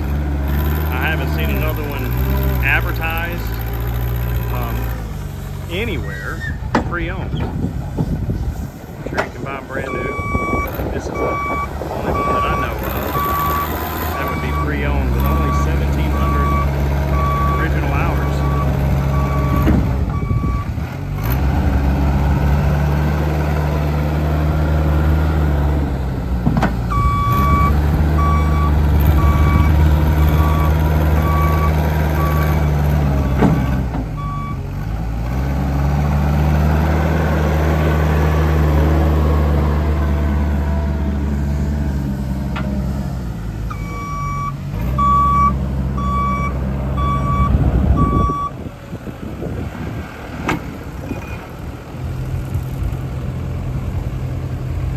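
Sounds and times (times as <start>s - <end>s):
diesel engine running: 0.0s - 54.9s
reversing alarm beeps: 9.8s - 19.6s, 26.9s - 32.6s, 34.2s - 34.6s, 43.7s - 48.6s.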